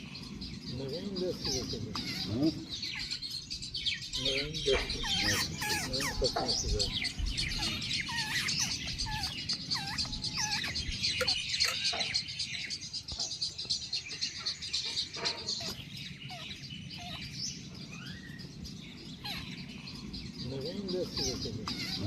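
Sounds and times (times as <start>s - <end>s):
birds chattering high chirps: 0.0s - 22.0s
lower curving bird calls: 0.0s - 22.0s.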